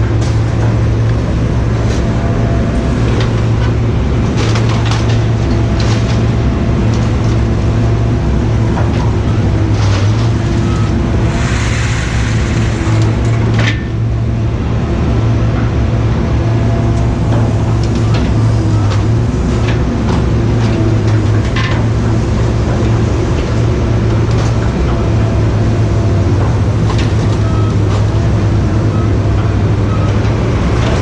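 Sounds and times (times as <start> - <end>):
engine humming steadily: 0.0 - 31.0
brief hiss: 11.2 - 13.4.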